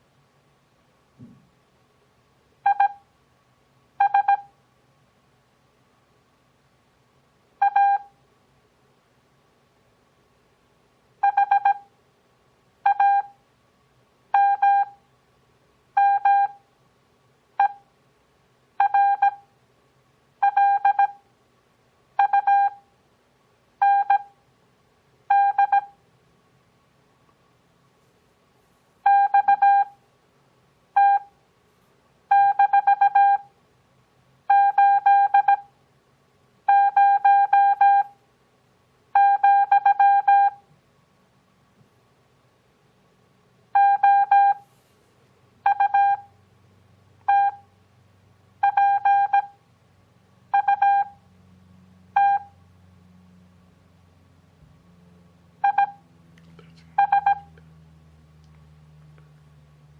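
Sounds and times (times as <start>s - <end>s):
morse code beeps: 2.6s - 3.0s, 4.0s - 4.5s, 7.6s - 8.1s, 11.2s - 11.9s, 12.9s - 13.3s, 14.4s - 15.0s, 16.0s - 16.6s, 18.8s - 19.4s, 20.4s - 21.2s, 22.2s - 22.8s, 23.8s - 24.3s, 25.3s - 26.0s, 29.0s - 29.9s, 31.0s - 31.3s, 32.3s - 33.5s, 34.5s - 35.7s, 36.7s - 38.1s, 39.2s - 40.6s, 43.8s - 44.6s, 45.7s - 46.3s, 47.3s - 47.6s, 48.6s - 49.6s, 50.5s - 51.2s, 52.2s - 52.5s, 55.6s - 56.0s, 57.0s - 57.5s.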